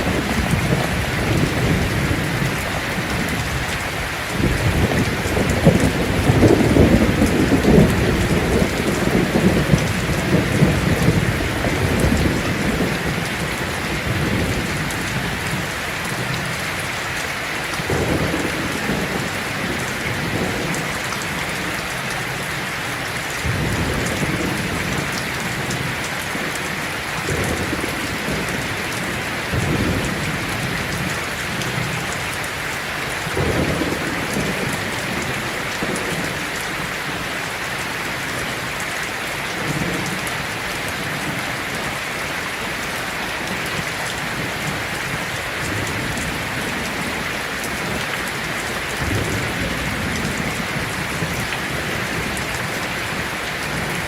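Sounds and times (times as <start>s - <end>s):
heavy rain on a tin roof: 0.0s - 54.0s
thunder rolling: 4.4s - 14.7s.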